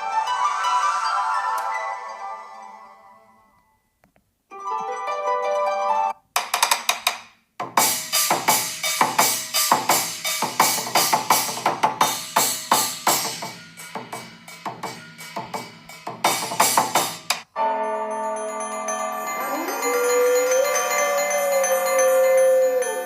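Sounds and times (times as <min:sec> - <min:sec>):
percussive ringtone: 0:17.6 - 0:23.0.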